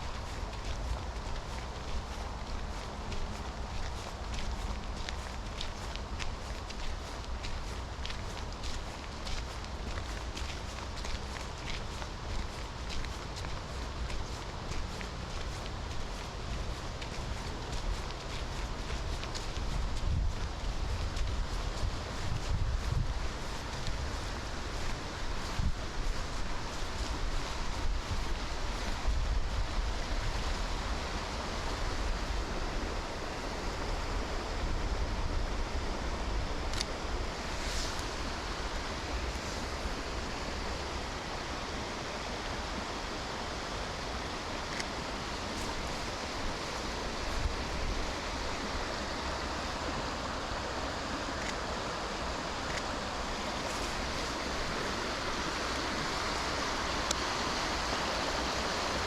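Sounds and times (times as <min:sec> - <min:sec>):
wind buffeting microphone: 0:00.0 - 0:42.8, 0:43.6 - 0:51.5
rushing water: 0:00.0 - 0:59.0.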